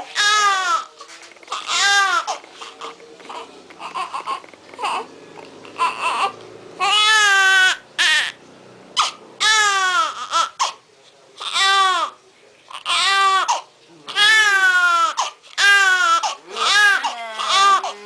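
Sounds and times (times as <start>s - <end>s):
newborn baby crying: 0.0s - 8.4s, 9.0s - 10.8s, 11.4s - 18.0s.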